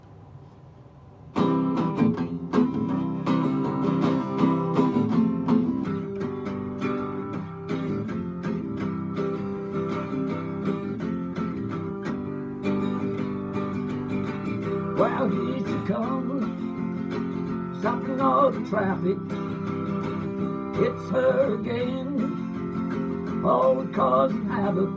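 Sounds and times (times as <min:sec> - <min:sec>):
instrumental guitar music: 0:01.2 - 0:24.9.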